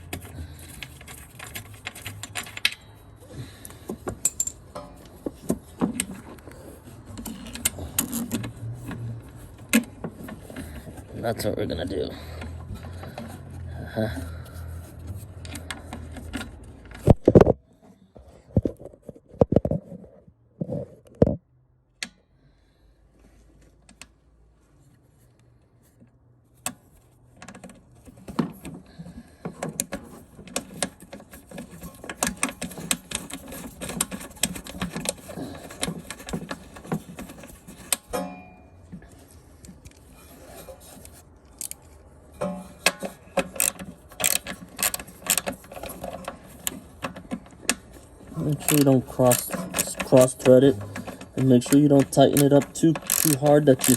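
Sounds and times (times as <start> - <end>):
metal tools and parts clinking: 3.9 - 6.2, 31.4 - 38.8, 39.9 - 53.9.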